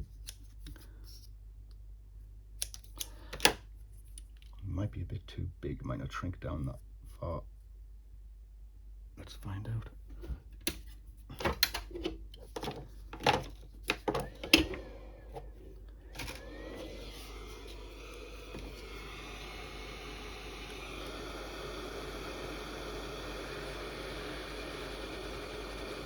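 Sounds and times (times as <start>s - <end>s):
heat gun blowing air: 14.2s - 26.0s.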